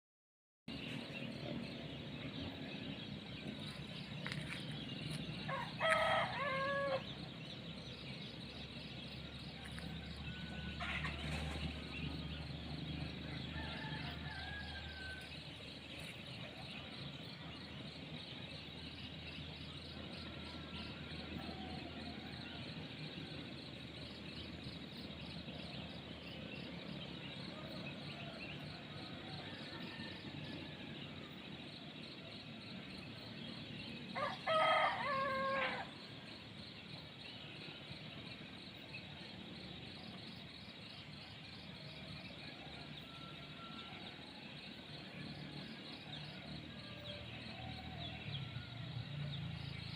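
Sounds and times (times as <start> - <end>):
rural ambience hiss: 0.7 - 49.9
rooster crowing: 5.5 - 7.1, 34.2 - 35.9.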